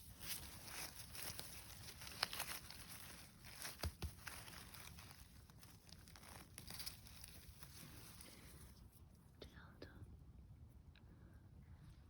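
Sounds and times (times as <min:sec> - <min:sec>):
rustling of forest-floor litter: 0:00.0 - 0:08.9.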